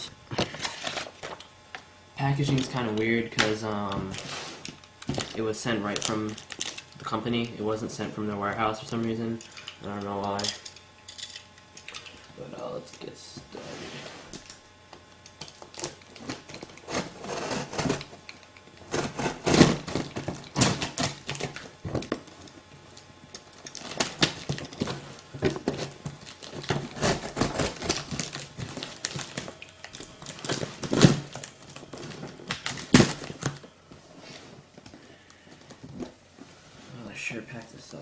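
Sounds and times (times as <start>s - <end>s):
packaging crinkling and tearing: 0.4s - 1.5s, 2.4s - 10.5s, 14.3s - 33.7s.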